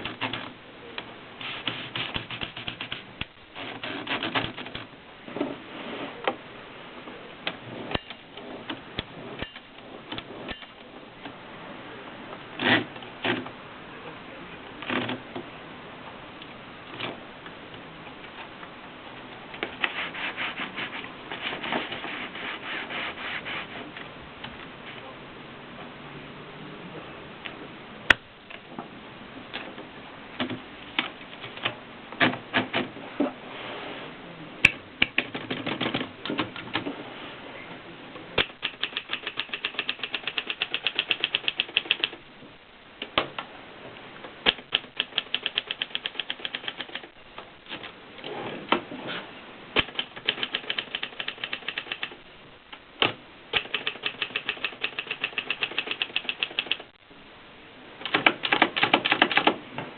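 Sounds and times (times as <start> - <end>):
manual typewriter typing: 1.4 - 4.9, 35.1 - 36.8, 38.4 - 42.2, 44.5 - 47.1, 49.8 - 52.2, 53.5 - 56.9, 58.0 - 59.6.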